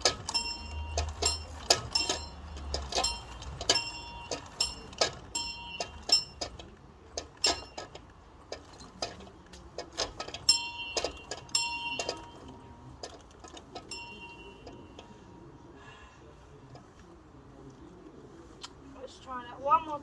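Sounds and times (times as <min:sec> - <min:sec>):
bell clanging: 0:00.2 - 0:06.5, 0:10.4 - 0:12.8, 0:13.7 - 0:15.1.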